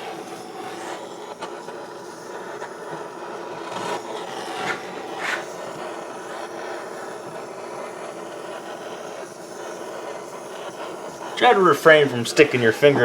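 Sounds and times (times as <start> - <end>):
torch flame roaring: 0.0 - 13.0
scraping sounds: 3.7 - 5.6.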